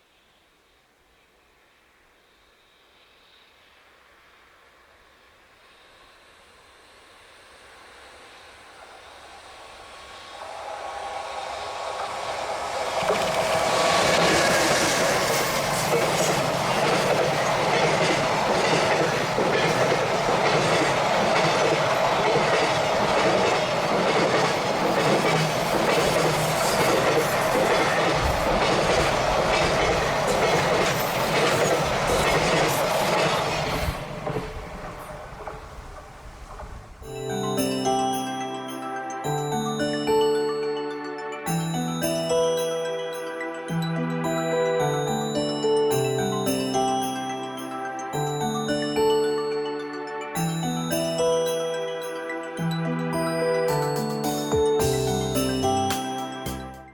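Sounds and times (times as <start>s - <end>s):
freight train wheels clattering: 10.8s - 37.0s.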